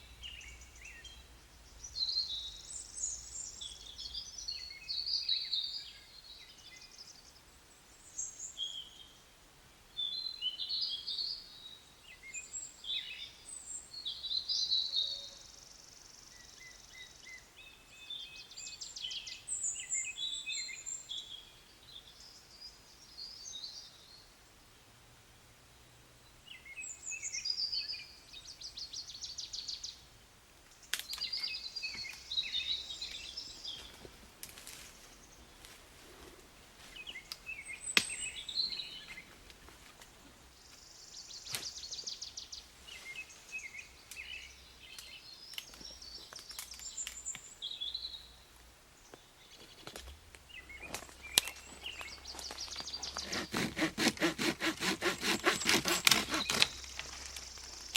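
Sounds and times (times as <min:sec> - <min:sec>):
songbirds singing: 0:00.0 - 0:24.7, 0:25.7 - 0:34.2, 0:36.8 - 0:57.9.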